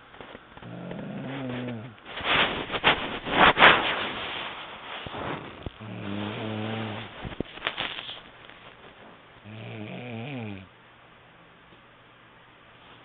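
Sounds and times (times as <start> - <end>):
woman snoring: 0.6 - 2.0, 5.5 - 7.2, 9.4 - 10.7.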